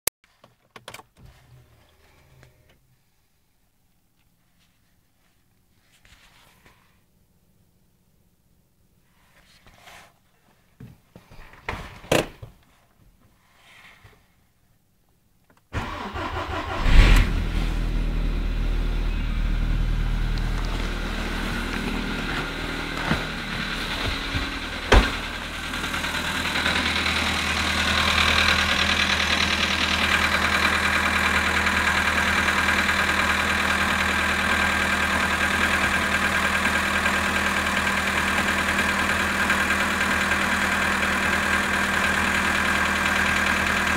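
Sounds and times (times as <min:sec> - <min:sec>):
car engine cranking and idling: 0:15.8 - 0:43.9.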